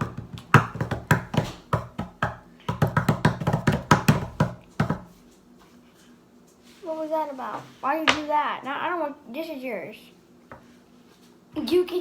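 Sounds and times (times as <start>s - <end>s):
sharp knocks and slaps: 0.0s - 5.1s.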